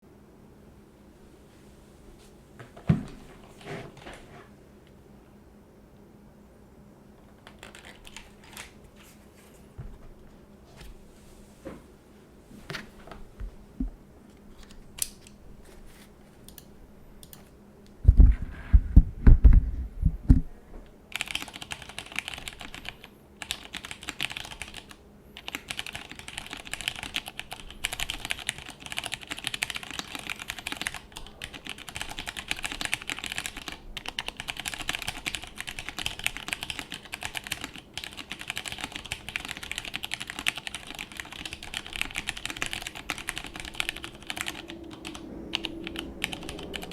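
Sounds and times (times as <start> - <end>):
mechanical keyboard typing: 7.2 - 8.8, 21.1 - 46.9.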